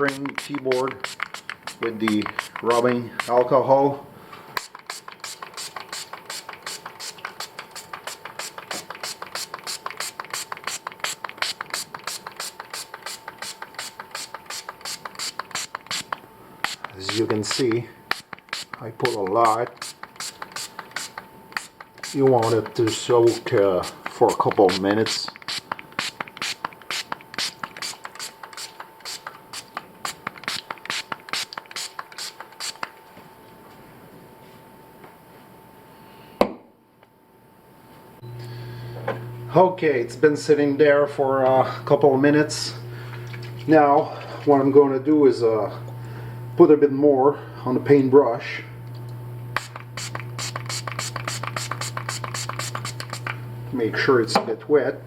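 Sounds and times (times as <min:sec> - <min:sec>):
trigger spray bottle squirts: 0:00.0 - 0:03.5, 0:04.6 - 0:33.0, 0:49.6 - 0:53.4.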